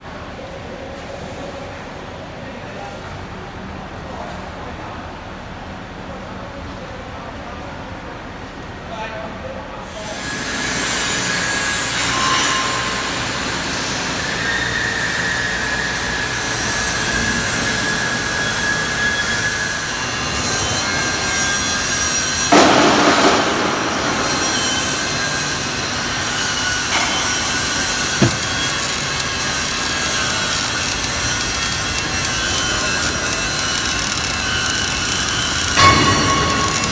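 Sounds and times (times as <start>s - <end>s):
sharp click: 28.0s - 36.9s
welding arc hissing and crackling: 28.0s - 36.9s.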